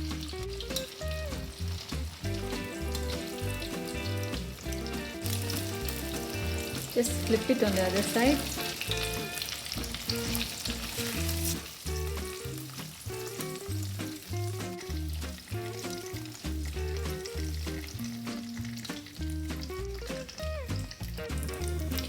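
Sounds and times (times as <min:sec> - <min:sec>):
tofu sizzling in hot oil: 0:00.0 - 0:22.0.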